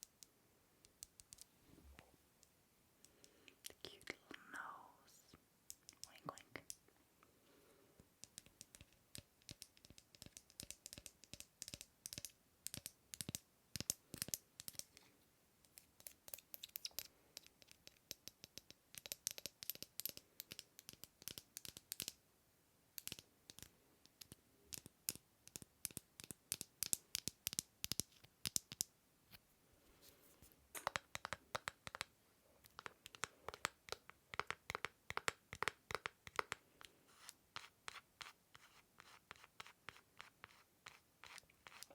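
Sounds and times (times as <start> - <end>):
hand scratching an object: 37.1 - 41.9.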